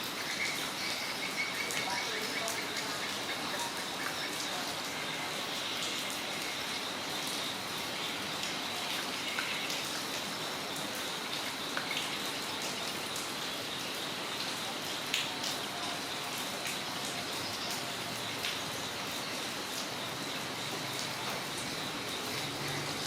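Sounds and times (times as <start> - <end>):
close raindrops striking: 0.0 - 23.0
steady rain falling: 0.0 - 23.0
high-pitched insect tone: 0.2 - 8.2.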